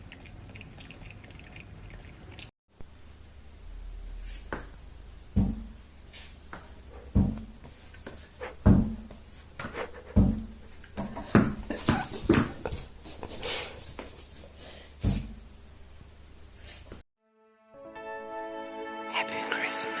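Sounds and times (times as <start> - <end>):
dull thumps: 4.5 - 5.8, 6.5 - 7.8, 8.6 - 12.9.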